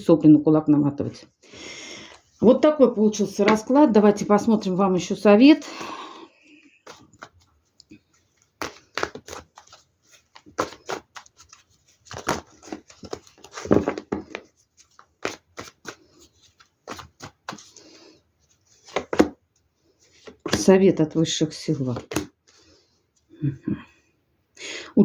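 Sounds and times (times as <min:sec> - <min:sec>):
cards flicking and slapping: 0:06.8 - 0:18.0, 0:18.8 - 0:19.4, 0:22.0 - 0:22.3
cards rustling: 0:06.8 - 0:20.7, 0:21.8 - 0:22.7.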